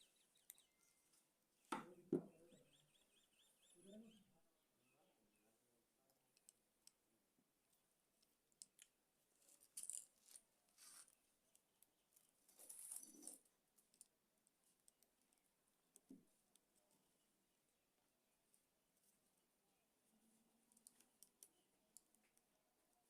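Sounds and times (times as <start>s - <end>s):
small objects clicking and rustling: 8.2s - 14.1s.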